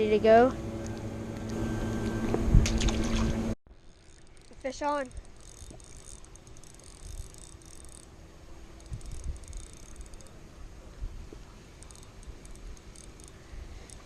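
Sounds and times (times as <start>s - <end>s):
fishing reel ticking: 3.8s - 10.4s, 11.8s - 14.0s.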